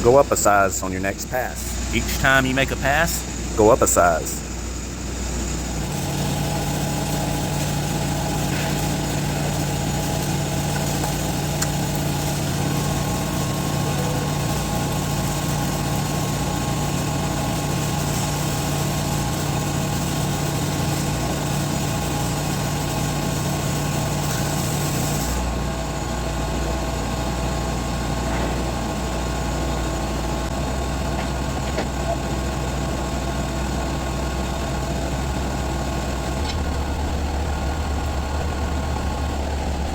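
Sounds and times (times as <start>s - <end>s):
welding arc hissing: 0.0s - 25.6s
low machine hum: 0.0s - 39.9s.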